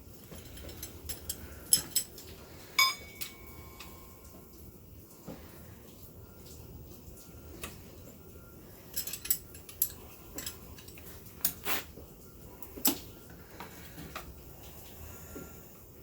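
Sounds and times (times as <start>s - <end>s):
metal tools clinking: 0.1s - 4.5s, 8.8s - 11.6s.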